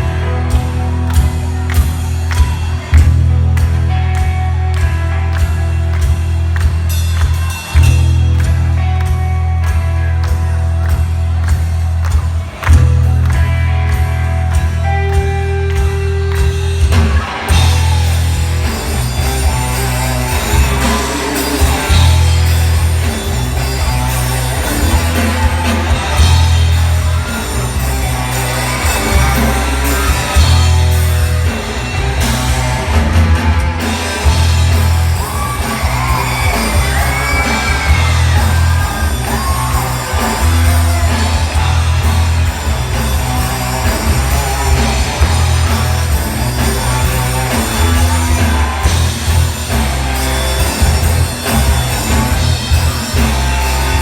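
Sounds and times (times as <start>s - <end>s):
live rock band playing: 0.0s - 54.0s
voices singing or shouting: 17.0s - 54.0s.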